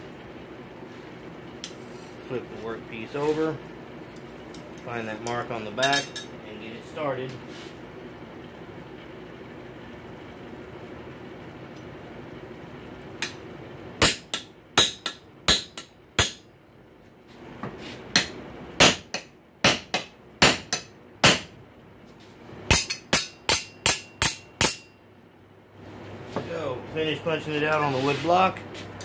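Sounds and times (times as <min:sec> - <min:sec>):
hammer striking punch on anvil: 0:14.0 - 0:16.5, 0:18.2 - 0:21.5, 0:22.7 - 0:24.9.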